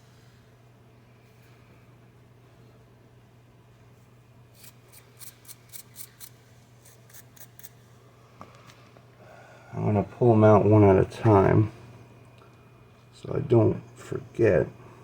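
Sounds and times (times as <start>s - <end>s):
wire brush scrubbing metal: 4.6s - 7.7s.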